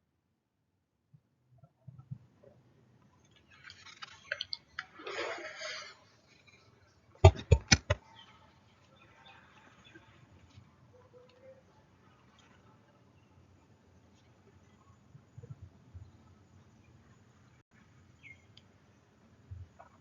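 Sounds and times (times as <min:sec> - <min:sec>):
sharp clicks: 0:07.2 - 0:08.0.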